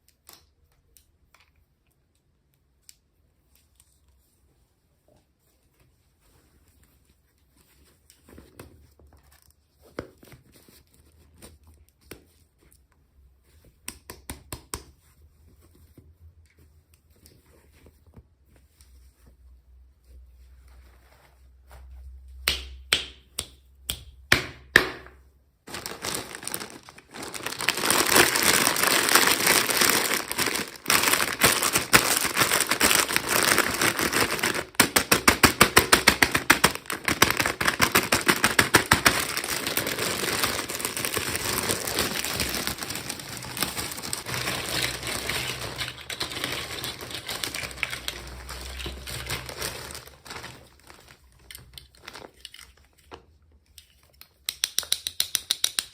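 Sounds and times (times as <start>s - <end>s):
toy packaging clicking and crinkling: 25.7s - 55.9s.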